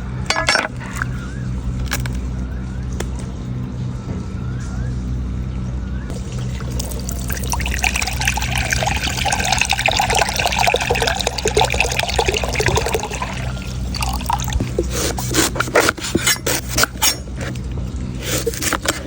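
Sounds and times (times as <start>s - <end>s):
steady low hum: 0.0s - 19.0s
coconut water pouring: 6.1s - 16.8s.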